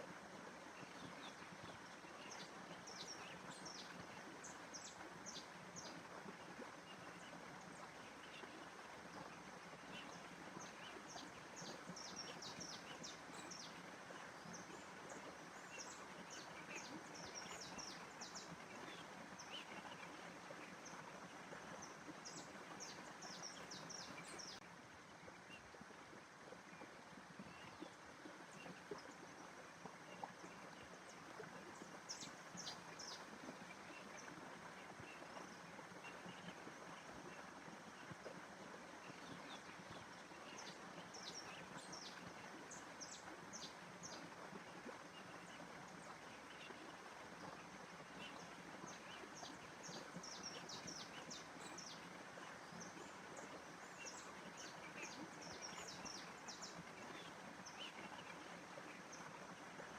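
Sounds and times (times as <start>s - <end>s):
small birds chirping: 9.8s - 24.6s, 30.1s - 37.4s.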